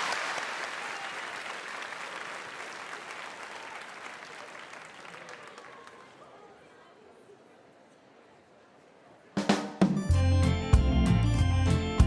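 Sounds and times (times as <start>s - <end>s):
large audience applauding: 0.0s - 6.3s.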